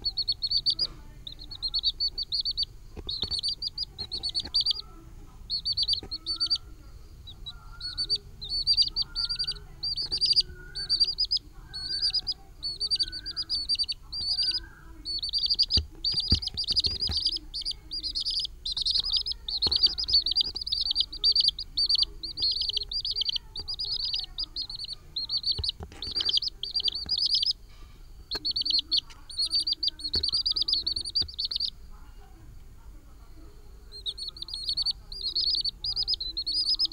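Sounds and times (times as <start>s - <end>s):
chicks peeping: 0.0s - 32.4s, 33.2s - 36.9s
lower calls: 5.5s - 27.5s.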